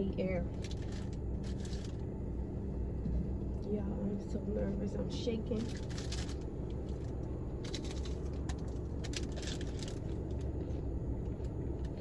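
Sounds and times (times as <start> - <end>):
low hum: 0.0 - 12.0
rustling or crackling bursts: 0.5 - 2.0, 5.6 - 12.0.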